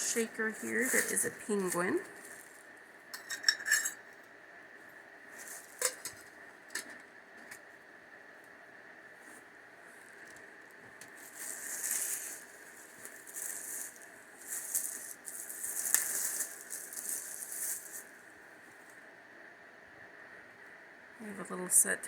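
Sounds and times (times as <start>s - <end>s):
packaging rustling and crinkling: 0.4s - 2.7s, 5.3s - 6.2s, 11.0s - 18.2s.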